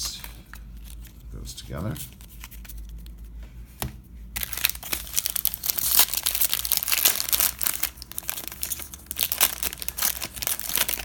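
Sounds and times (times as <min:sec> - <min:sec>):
plastic wrapper crinkling and tearing: 0:04.4 - 0:11.0.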